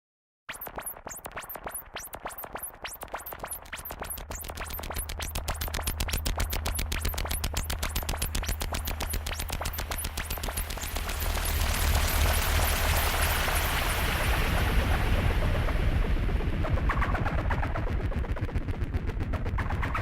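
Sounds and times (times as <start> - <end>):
synthetic ticks: 0.5 - 13.6
low synth bass: 3.4 - 20.0.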